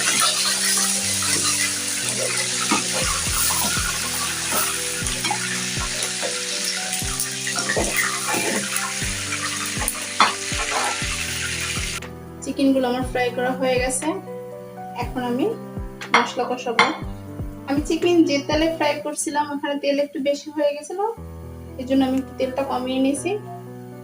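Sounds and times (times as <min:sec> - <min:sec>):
chicken deep-frying in oil: 0:00.0 - 0:12.1
background music with soft beat: 0:00.0 - 0:19.2.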